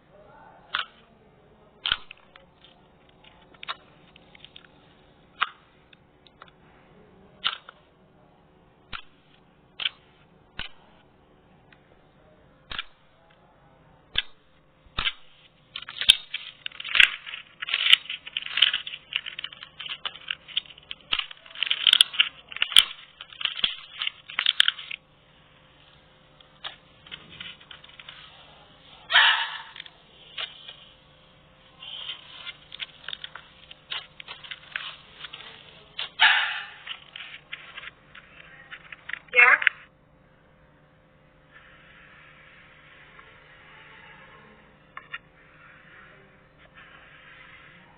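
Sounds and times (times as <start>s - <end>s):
slime popping and crackling: 15.0s - 25.0s.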